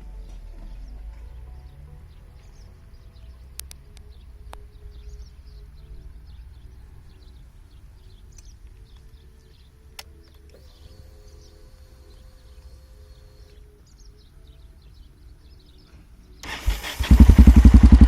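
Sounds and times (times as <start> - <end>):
birds chirping: 0.0 - 18.0
motorcycle engine idling: 16.4 - 18.0.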